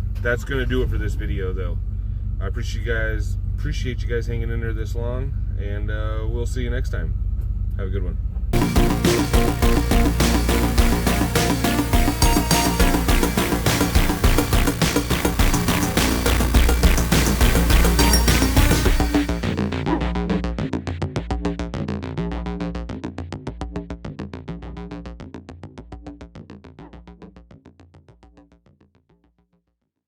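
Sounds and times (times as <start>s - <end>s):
electronic music with heavy bass: 8.6s - 20.4s.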